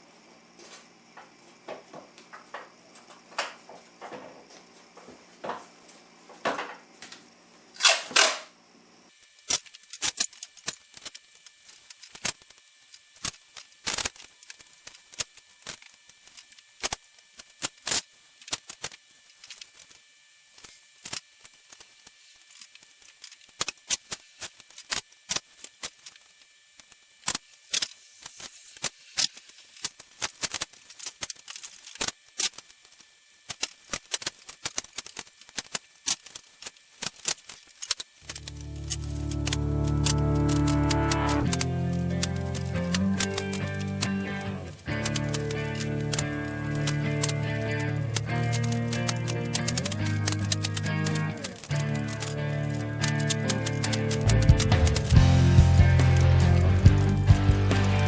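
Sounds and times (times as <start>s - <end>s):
sharp clicks and snaps: 33.5s - 58.0s
low hum: 38.2s - 58.0s.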